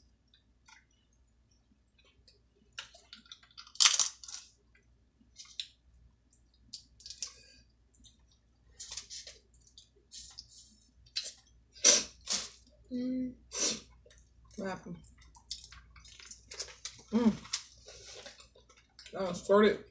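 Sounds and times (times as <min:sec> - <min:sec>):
crab shells cracking: 0:02.7 - 0:04.6, 0:06.7 - 0:07.4.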